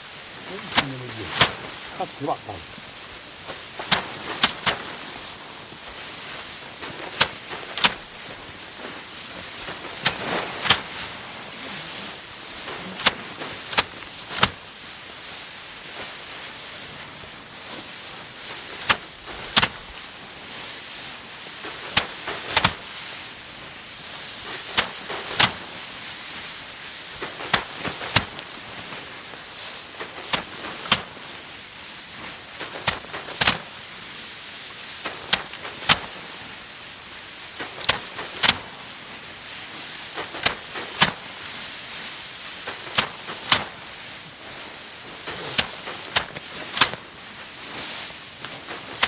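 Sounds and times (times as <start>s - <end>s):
steady hiss: 0.0s - 49.0s
rice stalks cracking and snapping: 3.8s - 11.0s, 35.1s - 39.5s, 42.4s - 49.0s.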